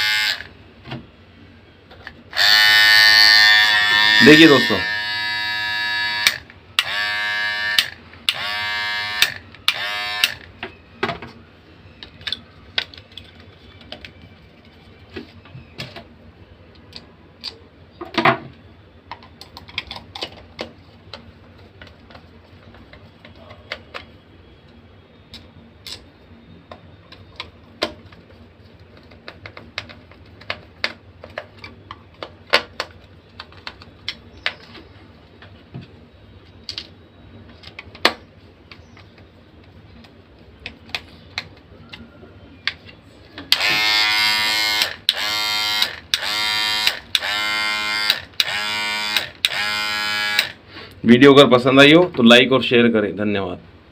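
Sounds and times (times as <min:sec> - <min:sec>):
electric hair trimmer buzzing: 0:00.0 - 0:00.5, 0:02.4 - 0:10.4, 0:43.5 - 0:50.6.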